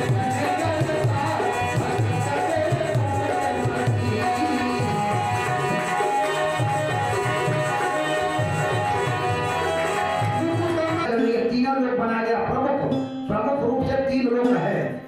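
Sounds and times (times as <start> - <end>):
hand drum beating: 0.0 - 11.2
sustained instrumental notes: 5.5 - 11.6.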